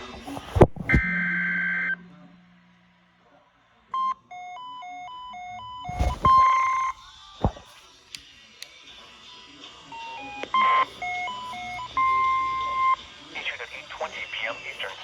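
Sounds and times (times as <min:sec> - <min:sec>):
short beep: 0:05.4 - 0:07.0.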